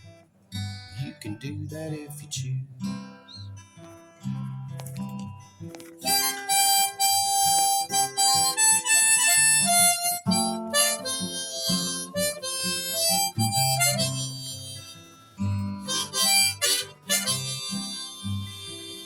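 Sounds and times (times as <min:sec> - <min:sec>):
acoustic guitar picking: 0:00.0 - 0:19.0
harmonica blues melody: 0:05.7 - 0:19.0.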